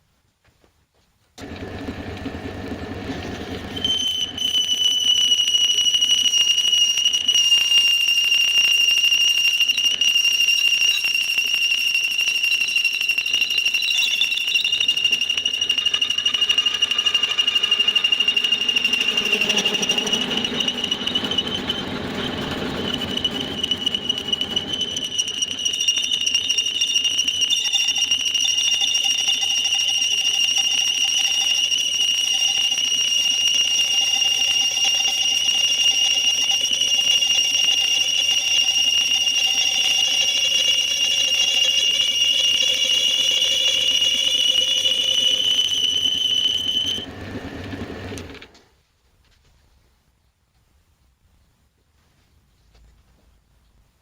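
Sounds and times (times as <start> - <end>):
belt sander running: 1.4 - 6.3, 14.8 - 48.6
high-pitched squeal: 2.7 - 48.5.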